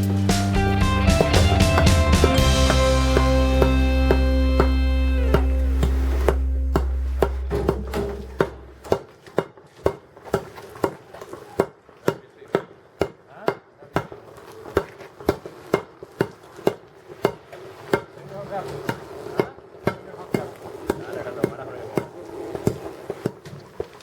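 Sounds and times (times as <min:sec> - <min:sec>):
tamper striking asphalt: 0:01.0 - 0:09.5.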